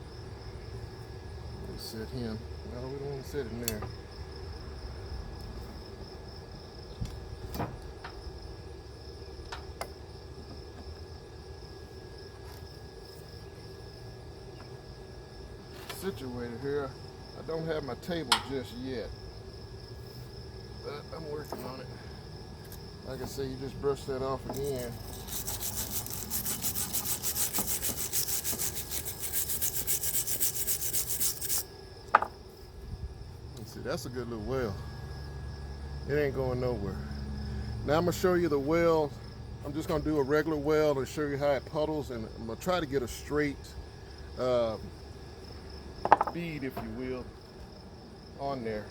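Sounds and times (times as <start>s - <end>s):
crickets chirping: 0.0s - 48.9s
wire brush scrubbing metal: 24.5s - 31.7s.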